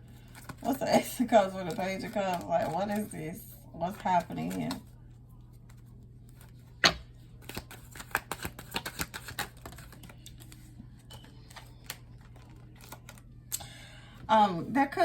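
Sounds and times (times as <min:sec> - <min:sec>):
faint steady hum: 0:00.0 - 0:15.0
cards clicking and tapping: 0:06.4 - 0:13.2.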